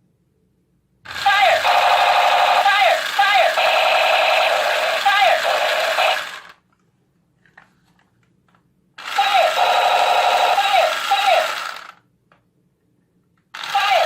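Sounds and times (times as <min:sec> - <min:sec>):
toy gun machine-gun rattle: 0:01.1 - 0:06.6, 0:09.0 - 0:12.0, 0:13.5 - 0:14.0.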